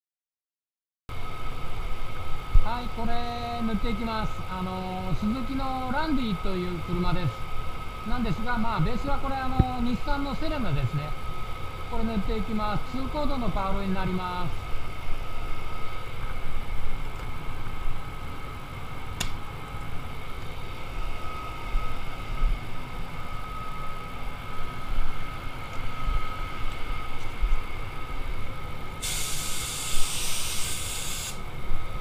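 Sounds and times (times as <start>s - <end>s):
low rumble with whine: 1.1s - 32.0s
spray gun compressed air hiss: 29.0s - 31.5s.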